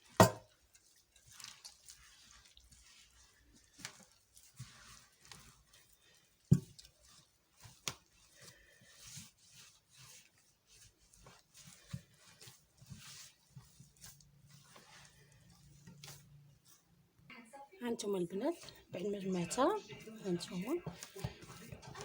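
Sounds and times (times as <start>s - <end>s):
dough squishing by hand: 0.0s - 22.0s.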